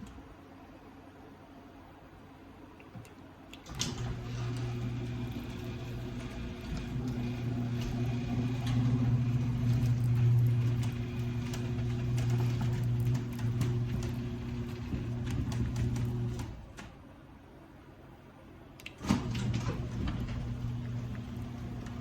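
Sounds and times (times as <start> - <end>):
garage door opener motor hum: 3.6 - 17.1, 18.8 - 22.0
garage door clicking and rattling: 3.7 - 17.0, 18.9 - 22.0.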